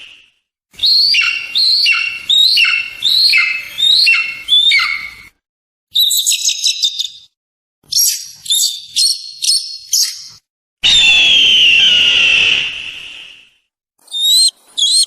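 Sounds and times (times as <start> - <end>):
eagle calling: 0.8 - 5.3, 14.1 - 15.0
eagle chattering: 1.0 - 5.2.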